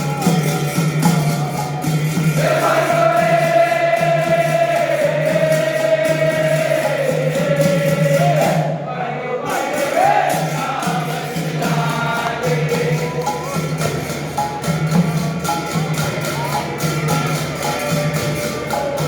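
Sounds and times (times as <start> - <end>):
percussion beat: 0.0 - 19.0
group devotional singing: 2.1 - 14.1.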